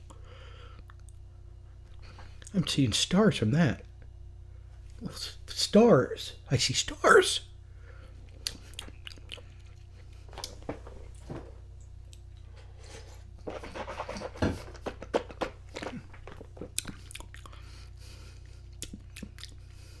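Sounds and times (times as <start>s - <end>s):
faint electrical hum: 0.0s - 20.0s
deep inhale: 0.1s - 0.8s, 7.7s - 8.2s
wet mouth clicks and smacks: 8.3s - 9.8s, 16.6s - 17.6s, 18.7s - 19.7s.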